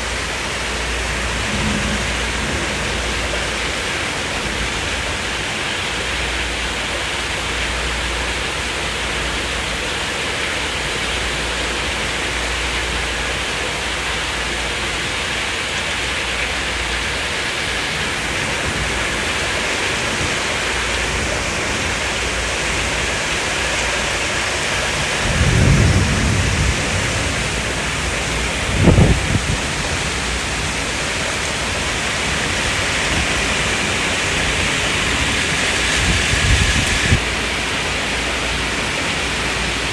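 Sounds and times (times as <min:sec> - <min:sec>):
thunder rolling: 0:00.0 - 0:06.9, 0:17.8 - 0:37.5
steady rain: 0:00.0 - 0:39.9
sharp thunder clap: 0:01.0 - 0:05.2, 0:24.9 - 0:31.0.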